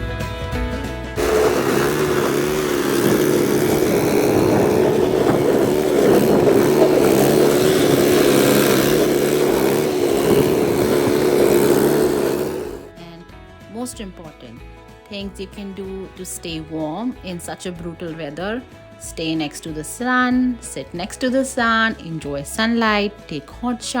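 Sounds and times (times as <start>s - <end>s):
snow thrower engine running: 1.2s - 12.9s.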